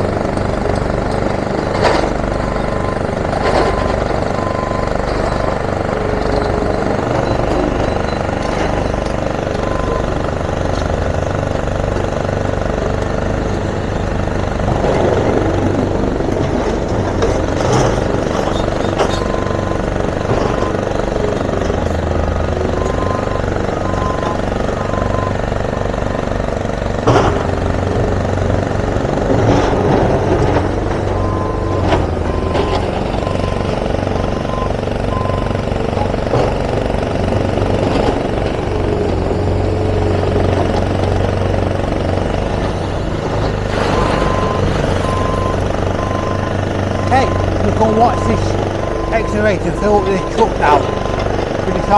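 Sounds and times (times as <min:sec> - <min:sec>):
heavy diesel machinery running: 0:00.0 - 0:51.9
rock crusher: 0:00.0 - 0:51.9
high beeping alarm: 0:02.4 - 0:11.2, 0:43.9 - 0:51.9.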